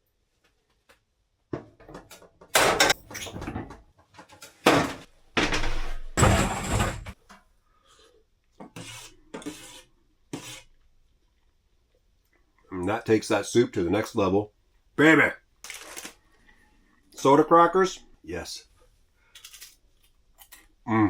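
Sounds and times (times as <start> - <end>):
spoon scraping a cooking pot: 8.6 - 10.8.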